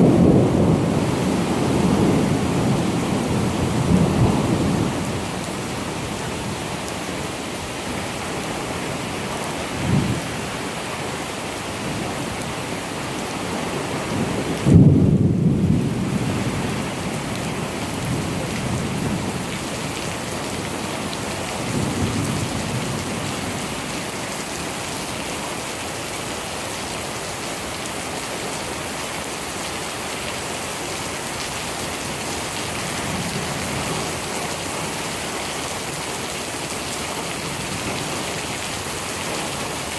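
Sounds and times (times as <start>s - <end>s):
thunder rumbling: 0.0s - 5.5s, 14.2s - 20.0s
heavy rain: 0.0s - 39.9s.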